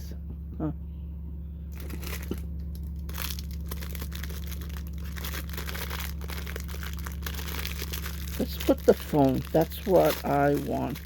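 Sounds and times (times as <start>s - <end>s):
low electrical hum: 0.0s - 11.0s
packaging crinkling and rustling: 1.7s - 11.0s.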